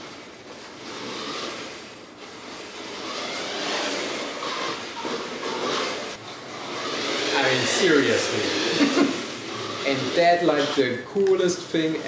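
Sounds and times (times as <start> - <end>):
tyres rushing over floor: 0.0 - 12.0
toy car motor whirring: 0.8 - 12.0.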